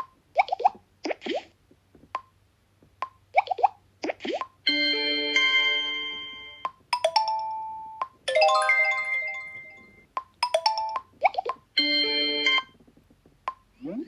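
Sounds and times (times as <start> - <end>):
phone alert tones and chimes: 4.6 - 12.8.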